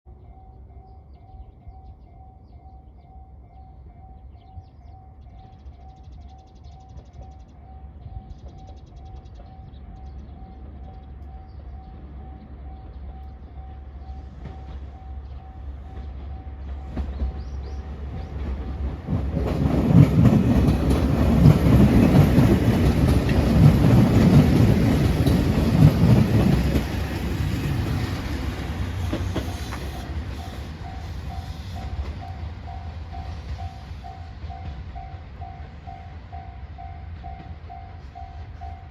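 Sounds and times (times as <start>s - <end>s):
level crossing warning bell: 0.1s - 17.2s, 30.0s - 38.9s
diesel train passing: 0.1s - 38.9s
rumbling wheels and rail clatter: 0.1s - 38.9s.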